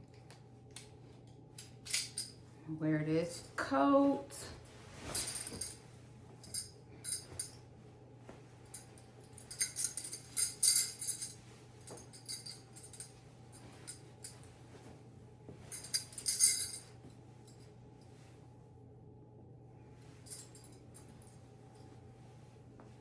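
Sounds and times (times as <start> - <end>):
metal bangles jingling: 5.0 - 5.8, 6.4 - 7.6, 8.7 - 14.5, 15.6 - 17.0.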